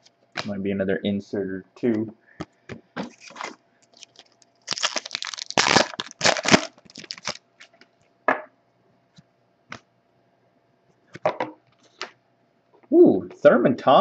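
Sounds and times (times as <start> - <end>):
wrapper tearing and crumpling: 3.1 - 7.8.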